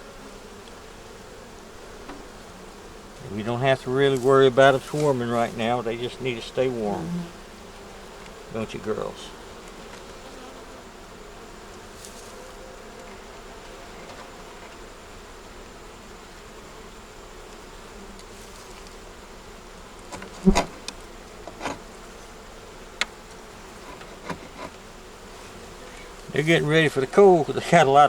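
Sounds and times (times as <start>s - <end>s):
bees buzzing: 0.0s - 28.0s
sharp knocks: 20.1s - 20.8s.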